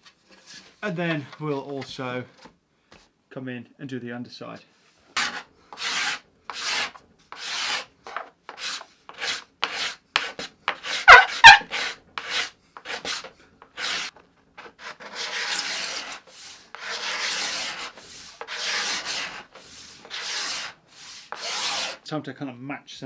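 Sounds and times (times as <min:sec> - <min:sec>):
card scraper scraping wood: 0:05.2 - 0:22.0.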